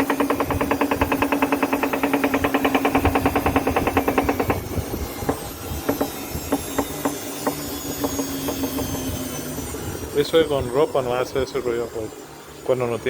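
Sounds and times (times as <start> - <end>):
washing machine spinning with knocking: 0.0 - 10.9
washing machine hum: 0.0 - 13.0.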